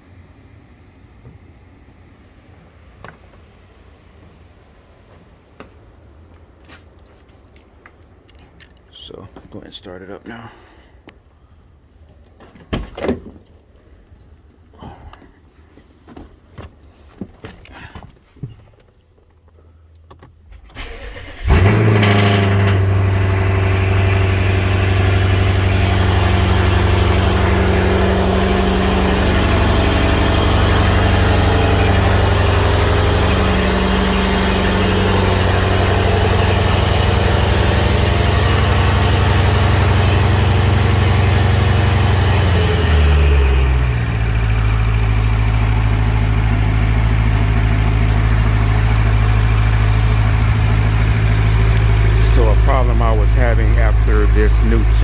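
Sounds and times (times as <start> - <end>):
car engine starting and idling: 20.2 - 55.0.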